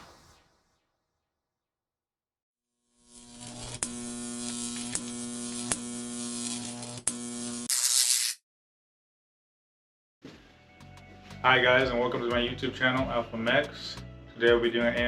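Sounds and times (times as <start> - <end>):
burst of hiss: 0.0 - 0.6
electrical buzz: 3.0 - 7.9.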